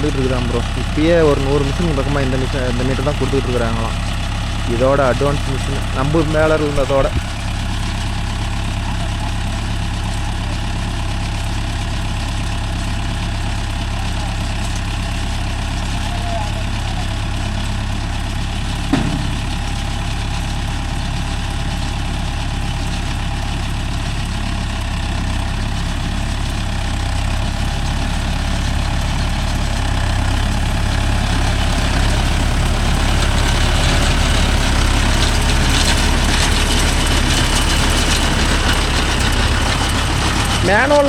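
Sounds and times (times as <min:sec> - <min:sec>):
tractor engine running: 0:00.0 - 0:41.0
sharp knock: 0:18.9 - 0:19.6.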